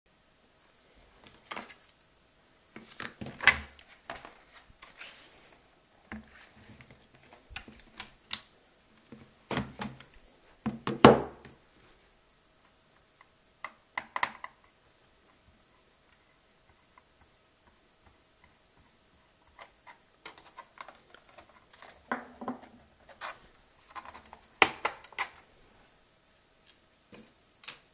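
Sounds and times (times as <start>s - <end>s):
laptop being handled: 1.2s - 2.0s, 2.7s - 11.2s, 16.1s - 25.5s.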